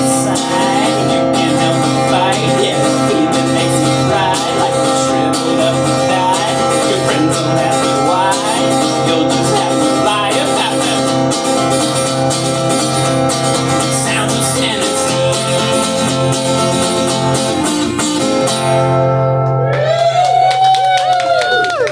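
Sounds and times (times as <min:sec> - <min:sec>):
person singing: 0:00.0 - 0:11.3, 0:13.8 - 0:16.6
acoustic guitar strumming: 0:00.0 - 0:19.7.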